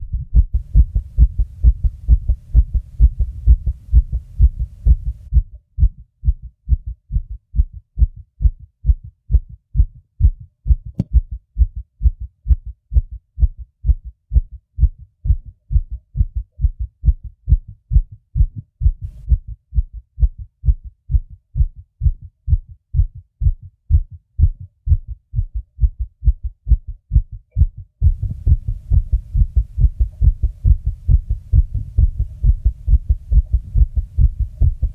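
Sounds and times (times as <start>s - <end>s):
low rumble: 0.0s - 9.0s, 24.9s - 34.9s
fast heartbeat thuds: 0.0s - 34.9s.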